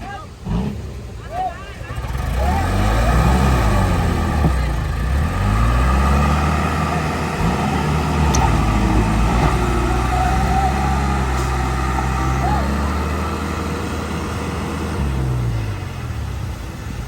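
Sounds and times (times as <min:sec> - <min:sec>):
heavy diesel engine running: 0:00.3 - 0:17.0.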